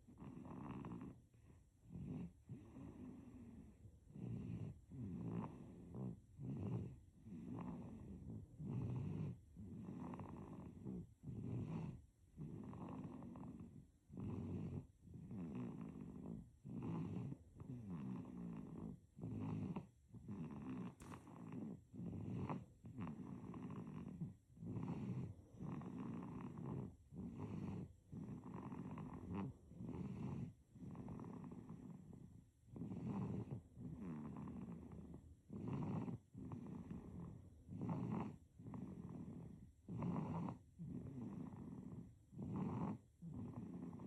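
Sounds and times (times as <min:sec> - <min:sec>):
baby snoring: 0:00.1 - 0:44.0.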